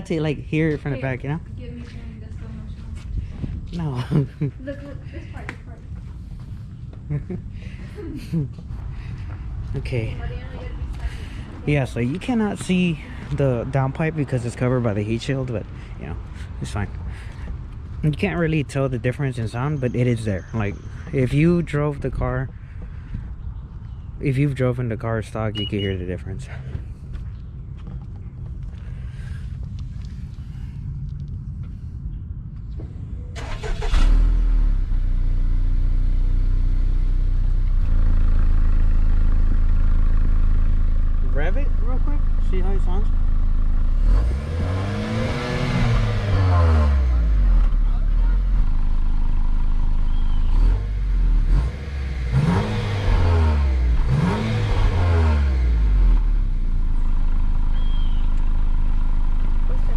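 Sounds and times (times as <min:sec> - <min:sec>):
car engine idling and revving: 0:00.0 - 0:59.9
car engine cranking: 0:33.3 - 0:36.4, 0:37.1 - 0:59.9
car engine idling loudly: 0:35.2 - 0:44.2, 0:45.2 - 0:59.9.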